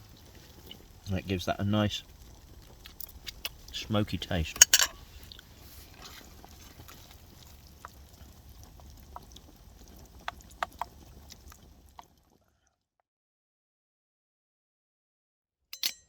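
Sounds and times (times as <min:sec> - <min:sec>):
chili simmering in a pan: 0:00.0 - 0:12.8
small clicks and taps: 0:10.2 - 0:12.1.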